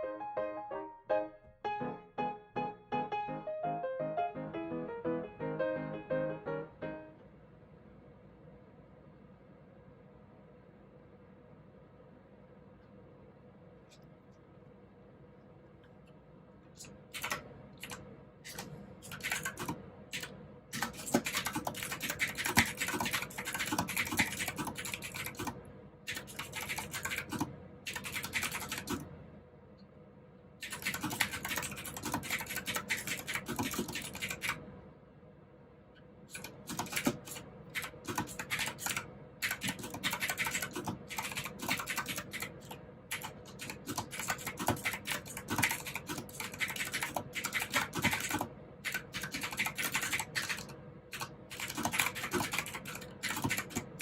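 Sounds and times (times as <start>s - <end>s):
mechanical keyboard typing: 16.8s - 29.1s, 30.6s - 34.6s, 36.3s - 54.0s.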